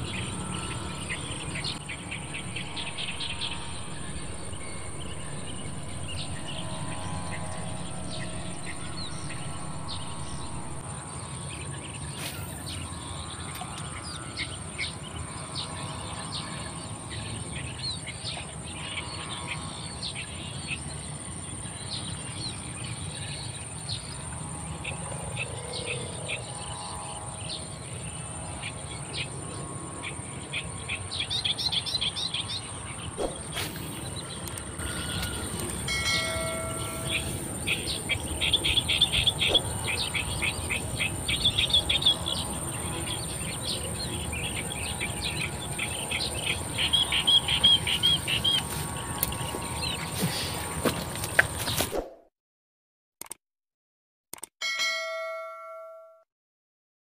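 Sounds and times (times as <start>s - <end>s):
low steady rumble: 0.0s - 11.2s
high insect drone: 0.0s - 51.9s
bird chirps: 31.0s - 50.6s.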